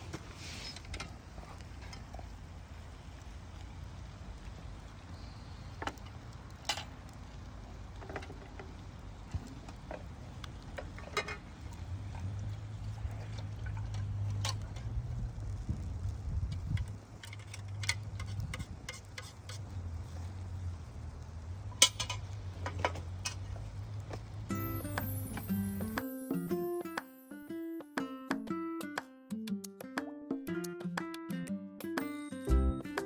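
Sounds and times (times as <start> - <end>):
wood fire popping and crackling: 0.0 - 26.7
low steady rumble: 1.2 - 24.5.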